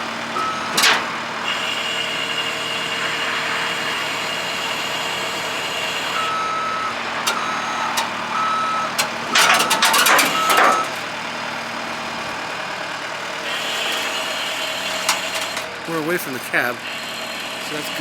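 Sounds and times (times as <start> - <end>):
diesel engine running: 0.0 - 18.0
backup alarm beeps: 0.3 - 11.1.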